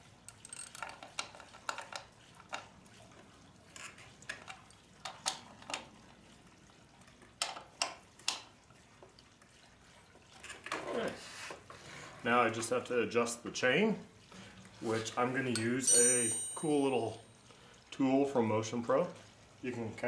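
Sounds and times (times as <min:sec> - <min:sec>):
metal hand tools clanking: 0:15.6 - 0:17.2.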